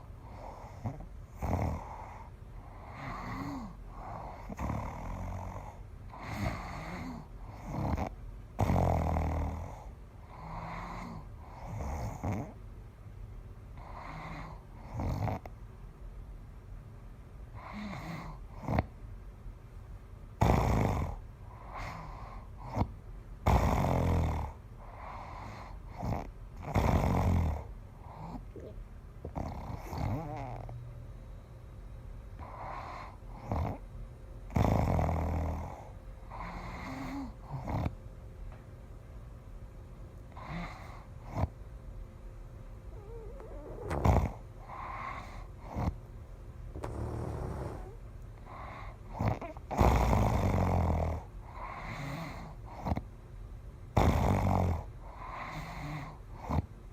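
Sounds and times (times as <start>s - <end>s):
person snoring heavily: 43.0s - 45.3s, 46.8s - 51.1s.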